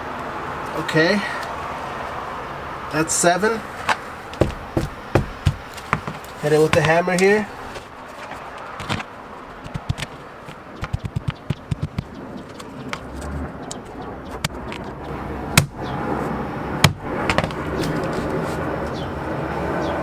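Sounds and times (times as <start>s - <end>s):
sledgehammer striking folded paper: 3.8s - 12.1s, 15.6s - 15.9s, 16.8s - 18.3s.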